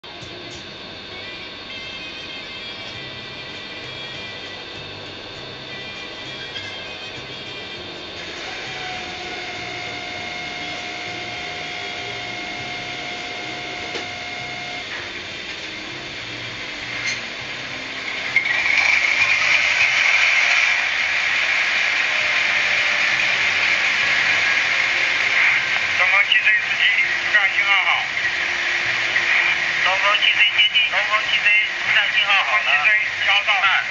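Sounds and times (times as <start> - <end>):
diesel engine sound from small speaker: 0.0 - 33.9
model motor and gears whirring: 7.9 - 26.0.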